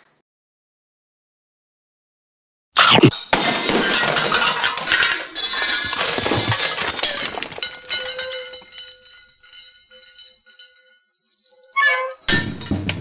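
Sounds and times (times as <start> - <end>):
metallic clanks and glassy clinks: 3.1 - 13.0.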